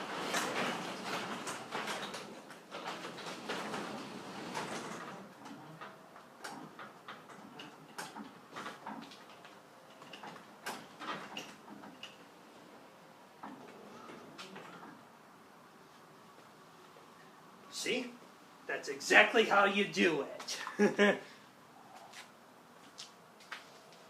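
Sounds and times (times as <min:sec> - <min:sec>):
garage door rattling in tracks: 0:00.0 - 0:12.7.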